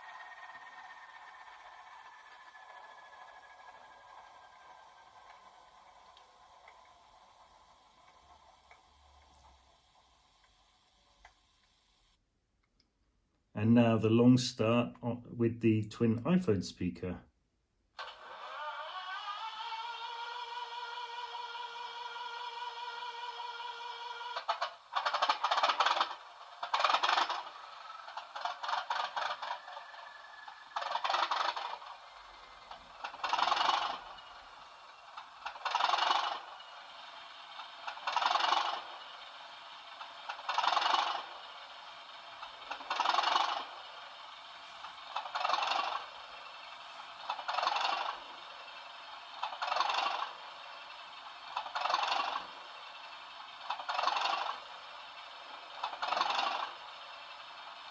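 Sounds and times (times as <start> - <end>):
faint steady hum: 0.0 - 17.9.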